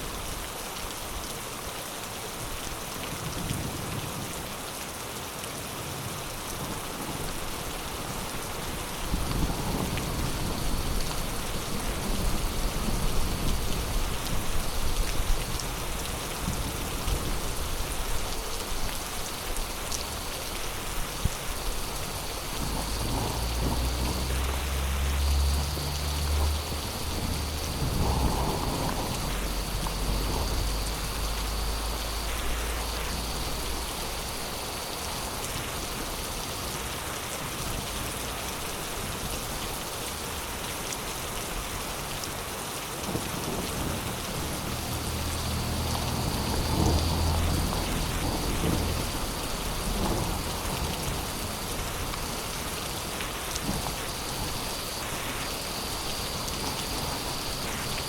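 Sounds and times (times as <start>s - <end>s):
heavy rain pouring: 0.0s - 58.0s
thunder rumbling: 6.6s - 36.1s, 43.1s - 58.0s.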